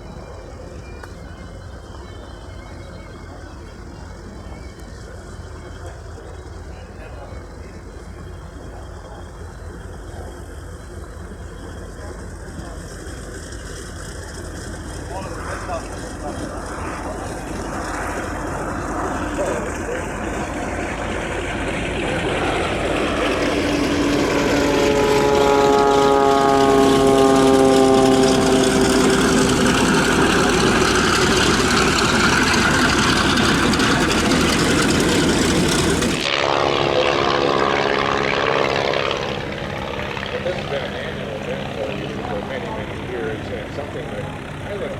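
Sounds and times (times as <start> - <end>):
airplane engine rumbling: 0.0 - 44.9.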